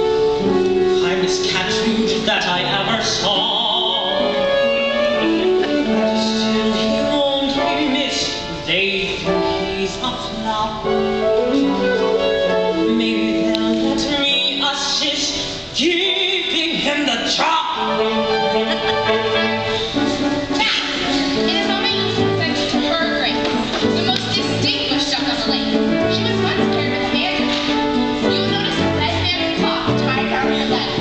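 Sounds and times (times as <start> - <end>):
orchestral musical theatre music: 0.0 - 31.0.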